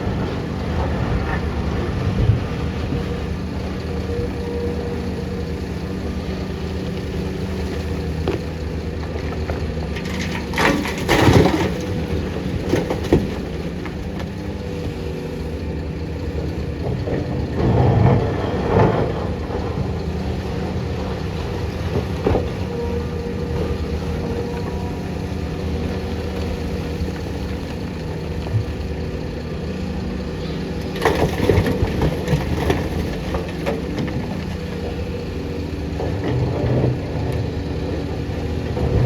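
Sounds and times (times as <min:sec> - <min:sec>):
excavator diesel engine running: 0:00.0 - 0:39.0
earth and rock crashing: 0:08.2 - 0:14.1, 0:31.0 - 0:34.8.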